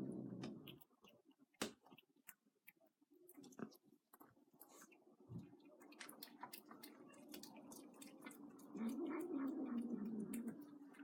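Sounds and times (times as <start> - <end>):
cat chewing clicks: 5.7 - 11.0.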